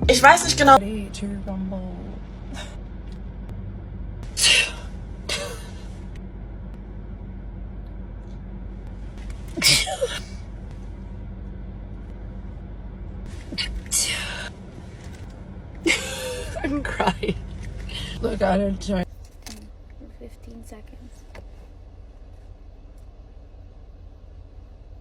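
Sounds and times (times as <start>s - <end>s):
steady low hum: 0.0s - 25.0s
woman sneezing: 4.4s - 5.8s, 9.6s - 10.3s.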